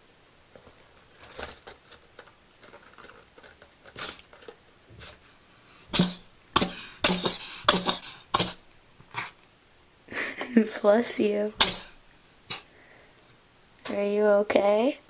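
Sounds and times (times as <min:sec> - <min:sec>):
cat sneezing: 0:04.0 - 0:04.2, 0:05.8 - 0:09.4, 0:11.5 - 0:12.7.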